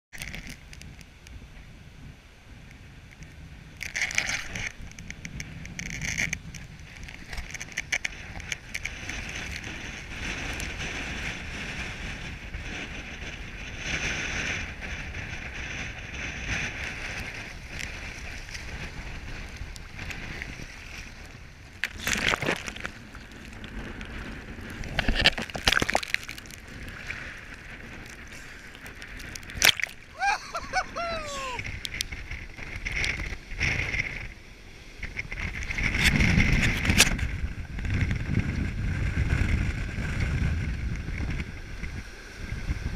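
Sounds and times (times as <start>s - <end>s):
water sloshing and splashing: 19.5s - 30.9s.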